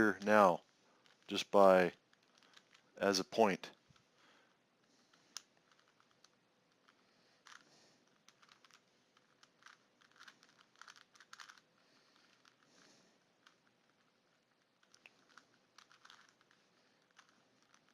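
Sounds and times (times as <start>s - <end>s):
puzzle cube plastic clicking: 5.1s - 12.8s, 13.4s - 17.9s.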